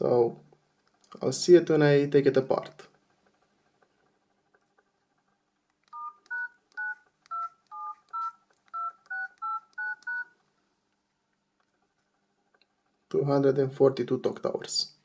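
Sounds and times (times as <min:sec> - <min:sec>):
phone keypad tone beeps: 0:06.0 - 0:10.3.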